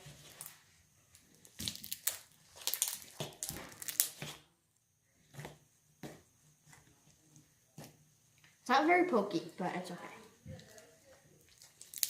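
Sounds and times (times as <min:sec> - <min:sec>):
slime crackling and popping: 0:01.2 - 0:04.4, 0:10.5 - 0:12.0.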